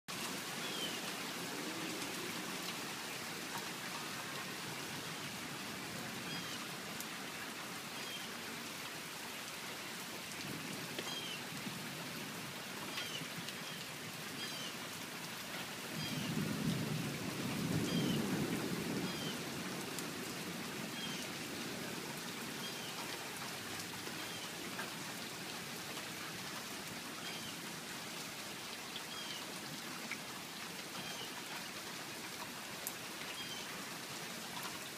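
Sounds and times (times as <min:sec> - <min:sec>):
steady rain falling: 0:00.1 - 0:34.9
thunder rumble: 0:16.0 - 0:19.6.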